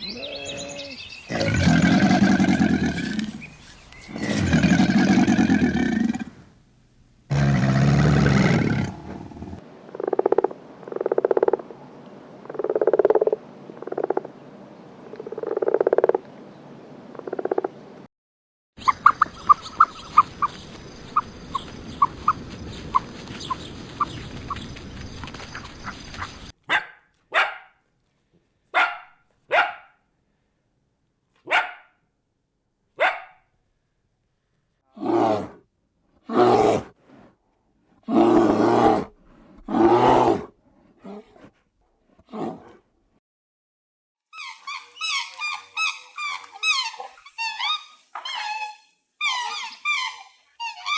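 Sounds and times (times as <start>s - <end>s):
dog barking: 26.7s - 27.8s, 28.7s - 30.0s, 31.4s - 32.0s, 33.0s - 33.4s.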